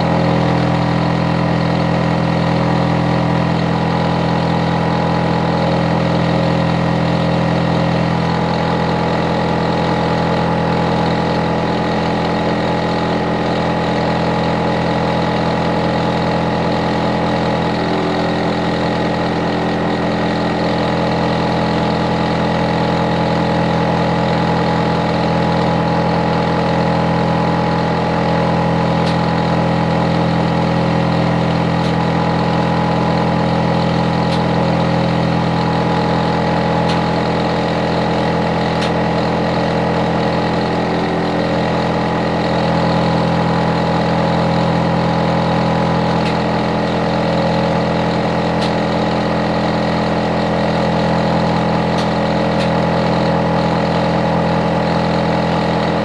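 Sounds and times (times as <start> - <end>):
air conditioner unit droning: 26.0 - 56.0.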